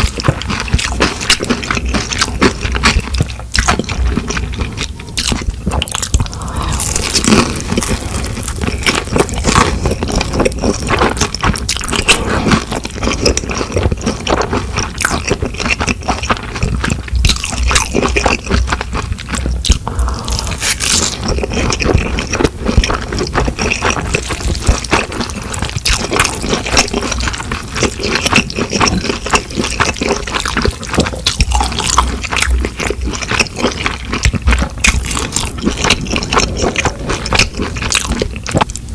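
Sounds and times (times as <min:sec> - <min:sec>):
wet sticky eating sounds: 0:00.0 - 0:38.9.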